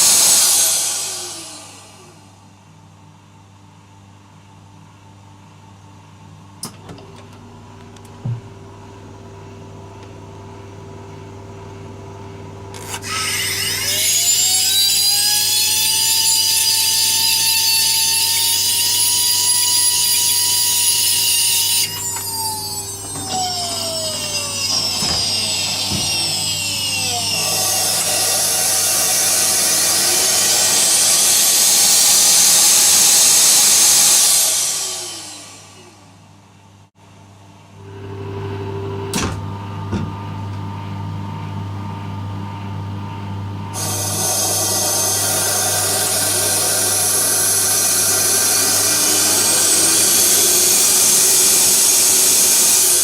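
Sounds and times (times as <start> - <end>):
turbocharger whine: 21.8 - 36.1.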